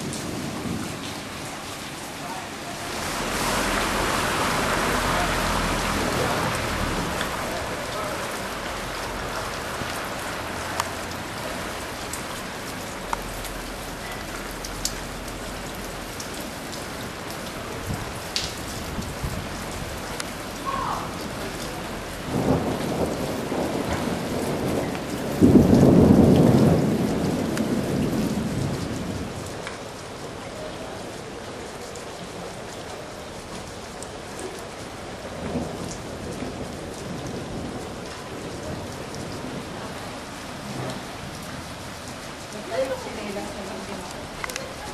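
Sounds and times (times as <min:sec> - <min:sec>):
sharp drips: 0:00.0 - 0:30.3
steady rain: 0:00.0 - 0:44.9
thunder rumbling: 0:17.0 - 0:29.5.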